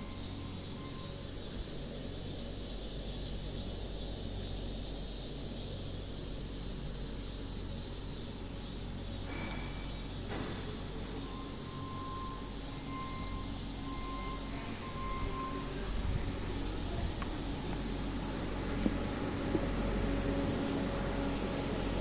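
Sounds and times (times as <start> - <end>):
factory machinery humming: 9.1 - 22.0
higher machine tone: 11.1 - 22.0.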